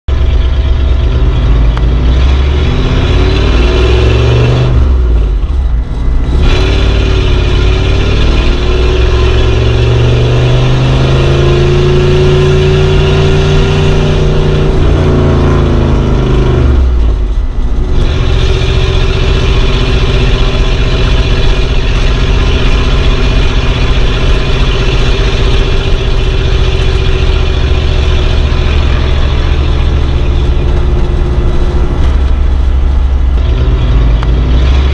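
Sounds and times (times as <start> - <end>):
vintage car engine running: 0.1 - 34.9.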